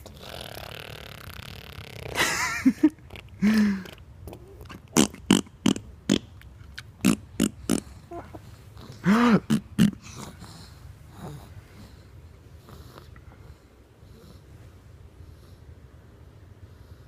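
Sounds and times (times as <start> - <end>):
person blowing raspberries: 7.0 - 8.3, 8.9 - 10.3.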